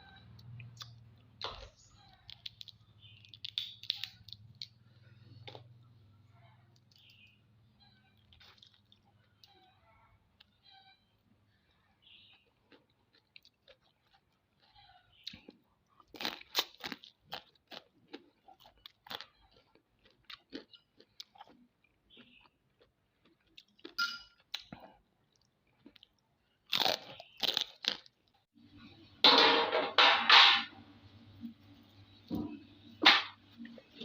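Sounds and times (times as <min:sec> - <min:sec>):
chewing and crunching: 0:00.0 - 0:29.0
crab shell cracking: 0:01.4 - 0:04.8.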